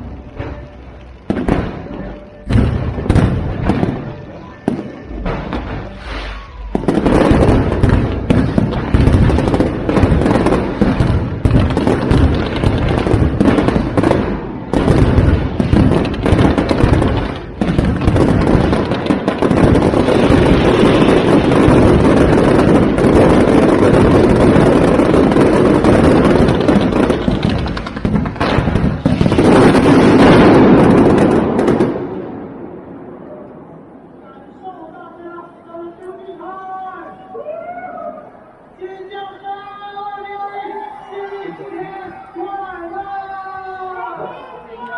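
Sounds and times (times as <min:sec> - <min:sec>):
fireworks bangs and crackle: 0:00.0 - 0:34.6.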